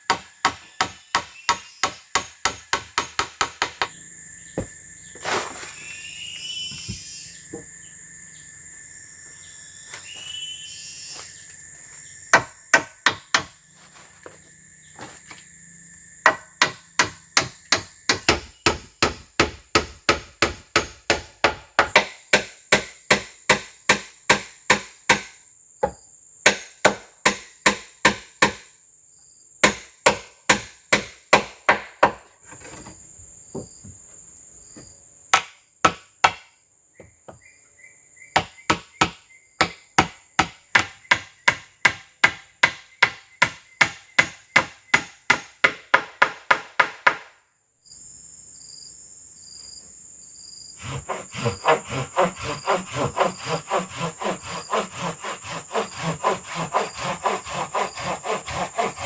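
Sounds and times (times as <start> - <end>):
tool chopping wood: 0.0 - 3.9, 12.3 - 13.6, 16.2 - 28.6, 29.6 - 32.2, 35.3 - 36.5, 38.4 - 47.4, 50.8 - 59.0
insects droning: 0.0 - 59.0.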